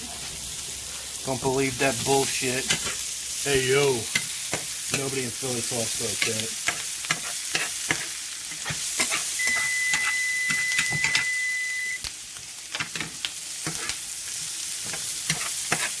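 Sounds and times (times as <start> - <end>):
steak and onions sizzling in a pan: 0.0 - 16.0
spatula clacking and scraping pan: 2.6 - 3.0, 4.1 - 5.2, 6.2 - 11.4, 12.8 - 16.0
thin high tone: 9.4 - 12.0.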